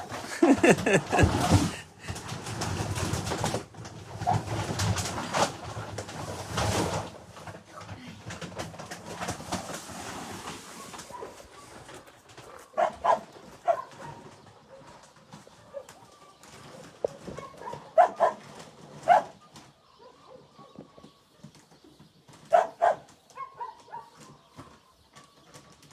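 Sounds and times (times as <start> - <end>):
dogs barking: 10.9 - 16.0, 17.3 - 19.4, 22.5 - 24.4.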